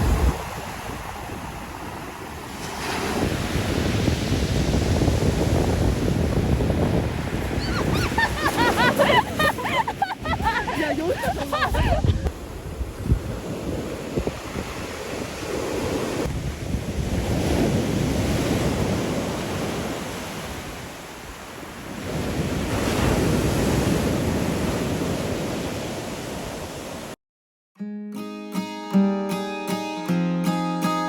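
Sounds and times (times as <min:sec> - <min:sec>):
wind buffeting microphone: 0:00.0 - 0:02.4, 0:03.0 - 0:20.6
sea waves washing on beach: 0:00.0 - 0:27.2
acoustic guitar music: 0:27.8 - 0:31.0.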